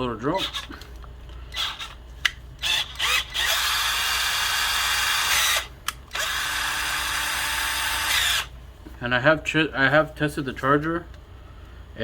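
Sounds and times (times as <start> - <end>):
cordless drill running: 1.5 - 2.0, 2.6 - 8.5.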